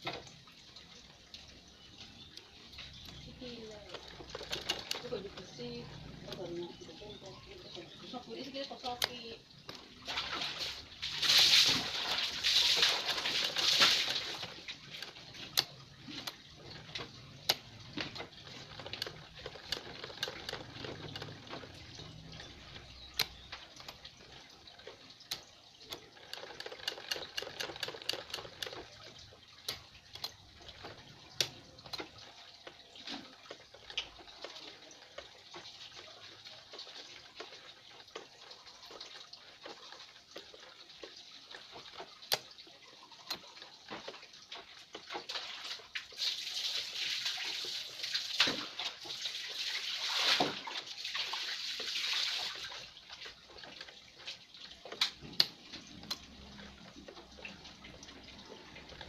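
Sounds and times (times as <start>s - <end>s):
sewing machine clicking: 3.0s - 6.6s, 12.3s - 32.4s.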